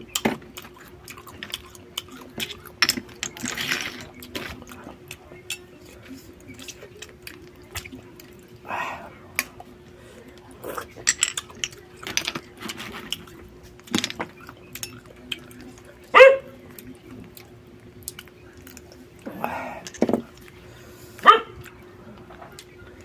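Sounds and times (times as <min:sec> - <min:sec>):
faint steady hum: 0:00.0 - 0:23.0
shells clicking and cracking: 0:11.0 - 0:15.1
dog barking: 0:16.1 - 0:16.6, 0:21.2 - 0:21.6.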